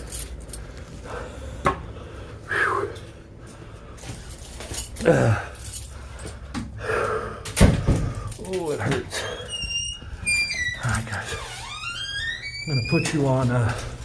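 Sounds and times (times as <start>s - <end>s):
keys jangling: 0.0s - 0.7s, 4.0s - 6.4s
man groaning: 5.0s - 5.6s.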